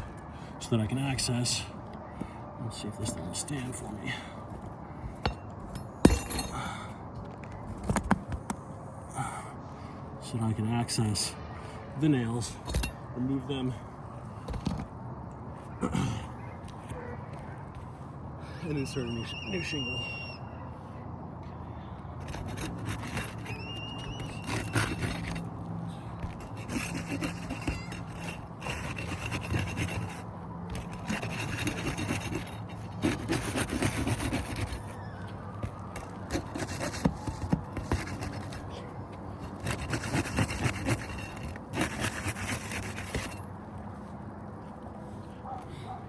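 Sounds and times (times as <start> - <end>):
roof shingles scraping: 22.2 - 43.5.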